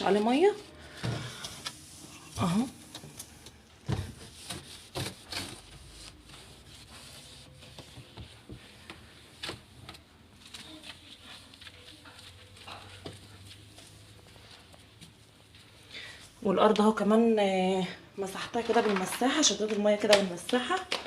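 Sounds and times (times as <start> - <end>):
soft rubbing: 4.0 - 15.9.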